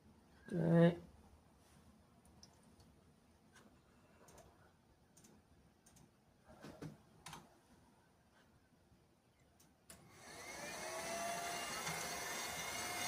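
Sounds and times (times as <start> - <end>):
faint scattered clicks: 5.1 - 6.1.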